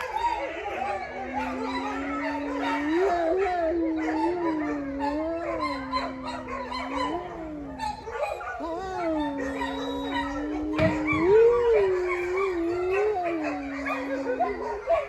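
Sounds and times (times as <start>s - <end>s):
wolves howling in chorus: 0.0s - 15.0s.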